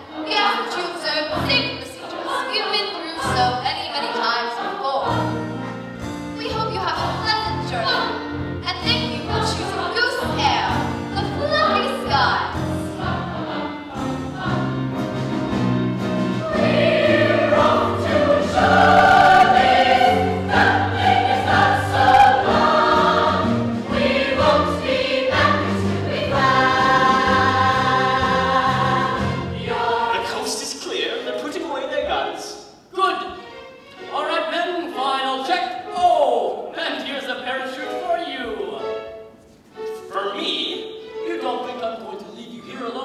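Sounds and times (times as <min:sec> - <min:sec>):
instrumental accompaniment: 0:00.0 - 0:35.1, 0:37.6 - 0:43.0
cast singing together: 0:01.4 - 0:05.6, 0:09.0 - 0:15.3, 0:16.4 - 0:30.8.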